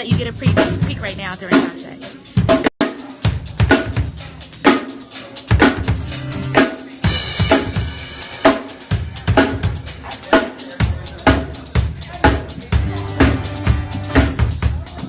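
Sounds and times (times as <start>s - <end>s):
low bass notes: 0.0s - 1.5s, 11.4s - 14.8s
drum kit playing a beat: 0.0s - 15.0s.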